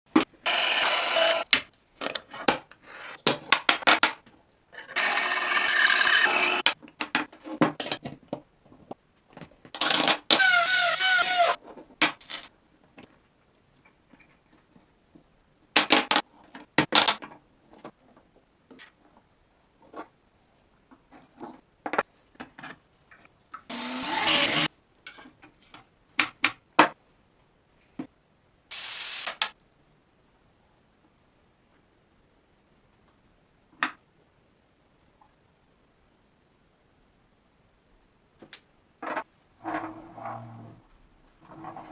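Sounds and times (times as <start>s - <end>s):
power tool cutting wood: 0.5s - 1.4s, 5.0s - 6.6s, 23.7s - 24.7s.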